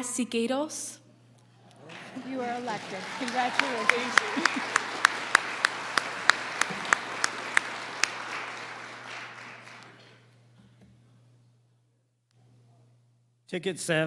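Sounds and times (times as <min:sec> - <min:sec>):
faint steady hum: 0:00.0 - 0:13.6
audience applauding: 0:01.6 - 0:10.2
nearby person clapping: 0:01.7 - 0:10.2.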